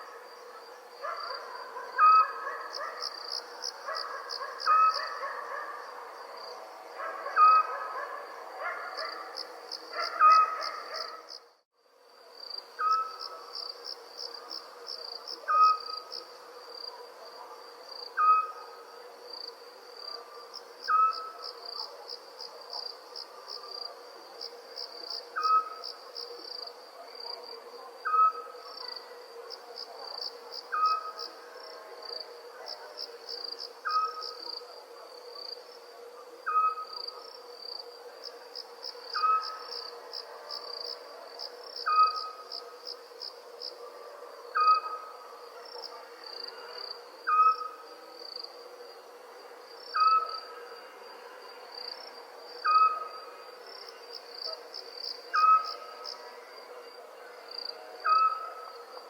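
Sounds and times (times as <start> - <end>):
crickets chirping: 0.0 - 59.0
owl hooting: 18.2 - 18.6, 20.9 - 21.4, 33.8 - 34.3, 36.4 - 37.0, 39.2 - 39.7, 47.3 - 47.8, 55.3 - 55.8, 58.0 - 58.6.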